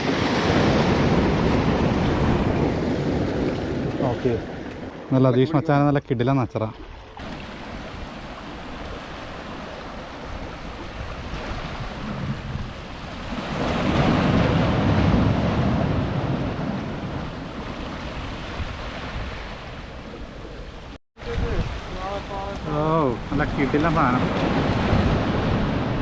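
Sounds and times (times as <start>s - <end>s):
wind buffeting microphone: 0.0s - 5.1s, 7.2s - 26.0s
sea waves washing against rocks: 7.2s - 26.0s.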